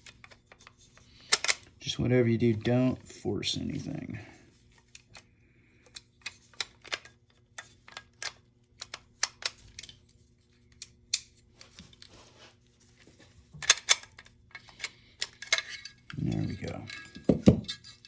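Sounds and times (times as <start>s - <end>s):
plastic parts clicking and tapping: 0.0s - 1.7s, 5.8s - 10.0s, 13.6s - 18.0s.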